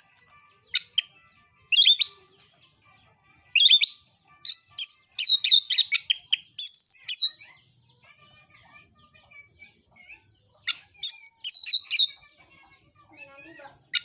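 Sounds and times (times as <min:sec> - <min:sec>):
bird singing whistled phrases: 0:01.7 - 0:02.1, 0:03.6 - 0:07.4, 0:10.2 - 0:12.2.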